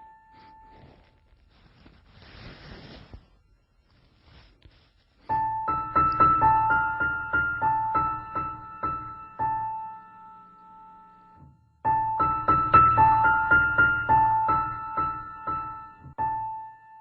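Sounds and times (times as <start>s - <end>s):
gentle piano melody: 0.0s - 1.3s, 5.2s - 17.0s.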